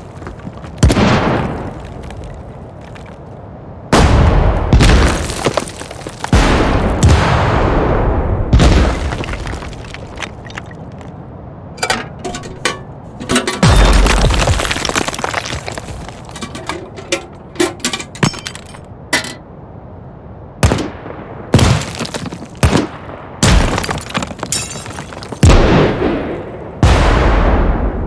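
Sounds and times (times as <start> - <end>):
debris and breaking glass rattling: 5.0 - 6.4, 11.8 - 19.4, 21.6 - 22.5, 23.6 - 25.4
sharp explosion blasts: 25.4 - 28.0.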